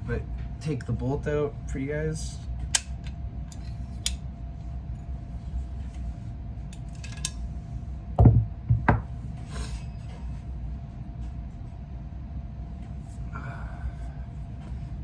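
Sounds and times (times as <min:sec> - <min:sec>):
heavy thumps: 0:08.2 - 0:09.1.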